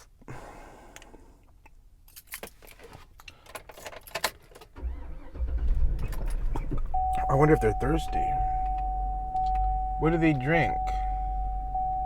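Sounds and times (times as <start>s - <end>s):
keys jangling: 2.1s - 2.8s.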